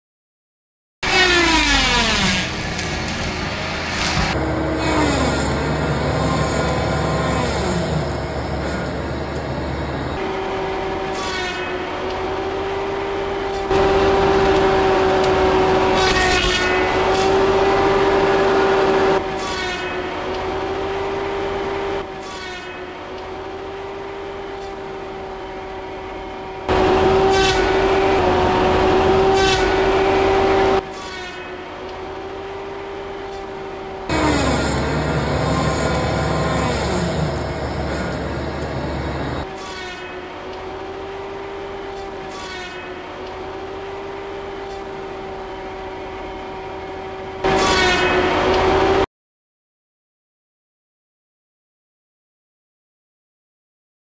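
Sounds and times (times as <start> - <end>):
saw rasping through brush: 1.0 - 9.7, 33.3 - 40.0
circular saw blade whine: 1.0 - 49.0
skid steer engine running: 1.1 - 11.0, 13.5 - 16.0, 26.0 - 30.5, 34.1 - 39.5.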